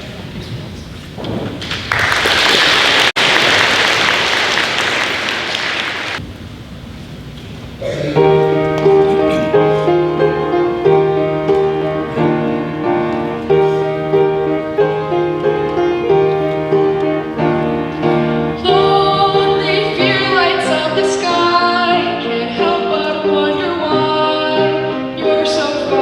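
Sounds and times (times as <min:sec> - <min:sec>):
audience clapping: 0:01.5 - 0:06.2
piano playing chords: 0:07.8 - 0:26.0.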